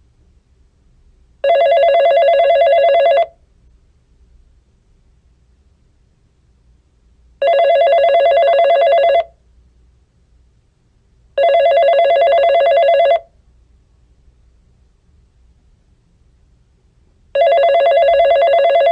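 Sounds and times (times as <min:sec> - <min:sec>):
electronic telephone ringing: 0:01.4 - 0:03.4, 0:07.4 - 0:09.3, 0:11.4 - 0:13.3, 0:17.4 - 0:18.9.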